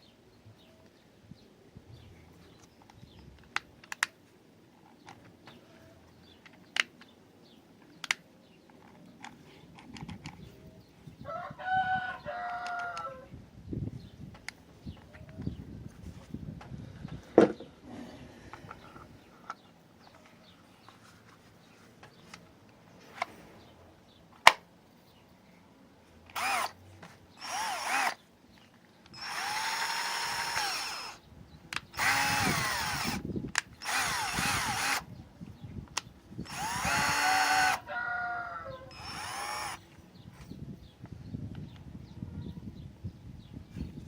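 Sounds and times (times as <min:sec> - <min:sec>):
sharp clicks: 0:03.4 - 0:04.2, 0:26.3 - 0:26.8, 0:29.0 - 0:35.1
cordless drill motor whining: 0:26.3 - 0:26.8, 0:27.4 - 0:28.2, 0:29.1 - 0:31.2, 0:31.9 - 0:35.1, 0:36.4 - 0:37.9, 0:38.9 - 0:39.9.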